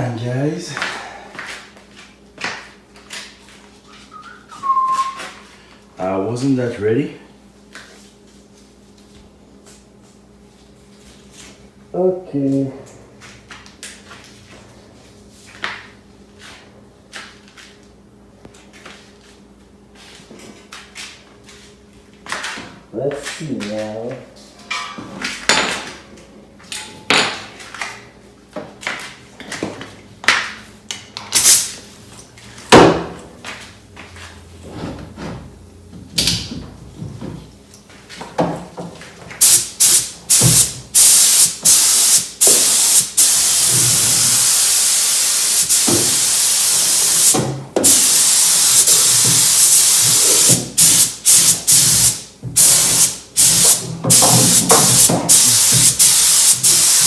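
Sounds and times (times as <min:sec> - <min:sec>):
spray gun hissing: 0:31.4 - 0:31.7, 0:39.4 - 0:57.0.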